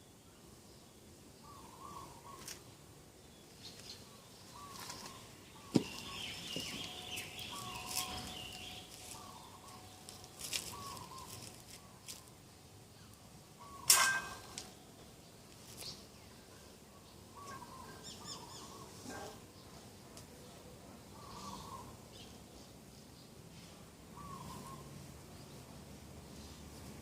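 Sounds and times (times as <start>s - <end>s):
higher bird chirping: 3.5s - 12.0s.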